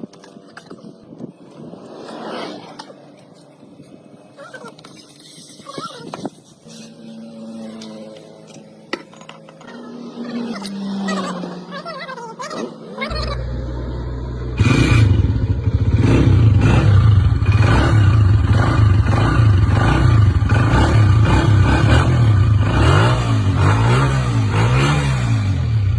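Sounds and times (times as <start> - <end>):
motorcycle engine revving: 6.6 - 25.9.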